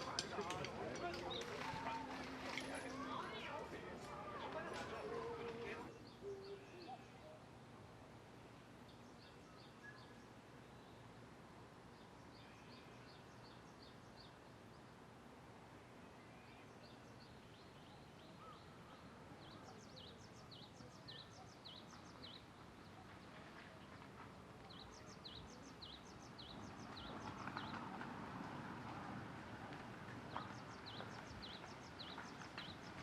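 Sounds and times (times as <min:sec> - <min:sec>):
bird singing: 0:00.0 - 0:07.6, 0:08.8 - 0:11.2, 0:11.9 - 0:15.0, 0:16.1 - 0:28.0, 0:30.3 - 0:33.0
faint outdoor hiss: 0:00.0 - 0:33.0
soft rush of noise: 0:00.7 - 0:19.4.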